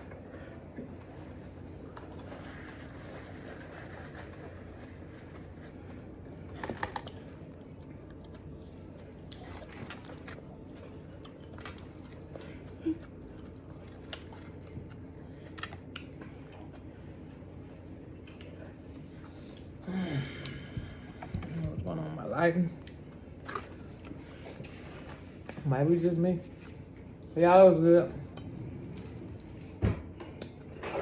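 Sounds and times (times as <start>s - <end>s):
chewing soft food: 0.0s - 21.9s, 22.8s - 25.7s.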